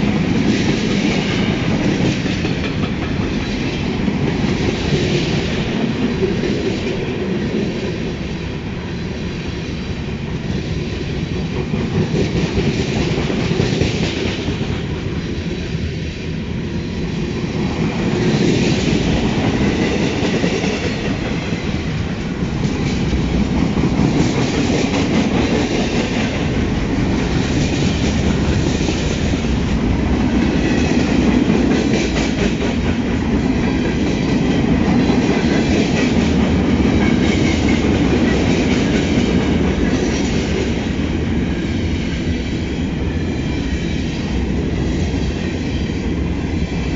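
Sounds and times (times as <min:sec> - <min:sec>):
freight train rumbling past: 0:00.0 - 0:46.9.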